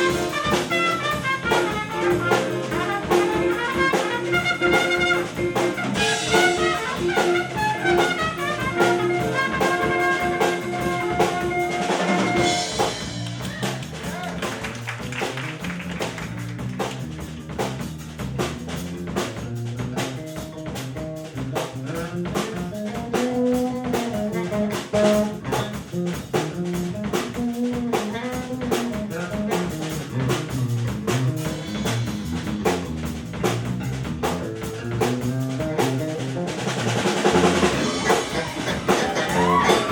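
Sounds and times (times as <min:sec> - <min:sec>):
brass section holding chords: 0:00.0 - 0:13.1, 0:37.2 - 0:39.9
drum kit bass and guitar groove: 0:00.0 - 0:39.9.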